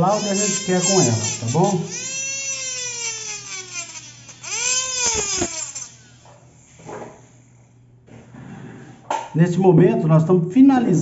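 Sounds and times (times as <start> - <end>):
micromotor bur grinding acrylic: 0.0 - 6.2.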